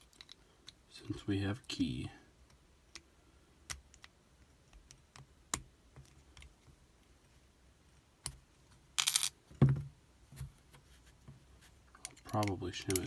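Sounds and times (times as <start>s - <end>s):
lock and key metal clicks: 12.0s - 13.0s.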